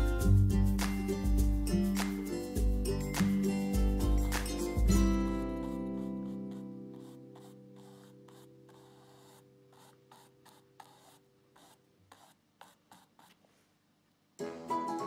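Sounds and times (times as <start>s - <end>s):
music: 0.0s - 7.9s, 14.4s - 15.0s
brush scratching on canvas: 4.2s - 13.8s.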